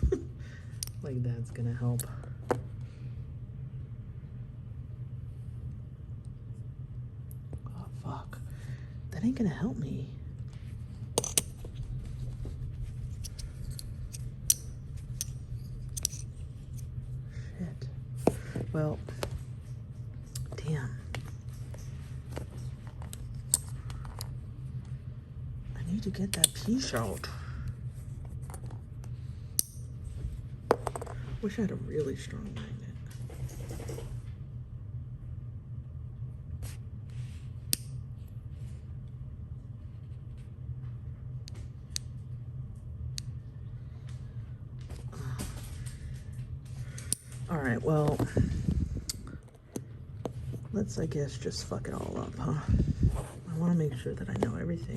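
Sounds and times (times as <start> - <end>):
steady low hum: 0.0 - 54.9
small metal parts clicking: 13.2 - 16.8.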